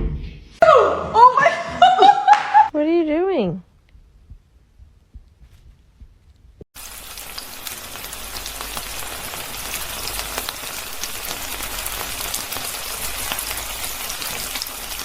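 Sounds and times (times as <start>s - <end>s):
falling water hissing and pattering: 6.8s - 15.0s.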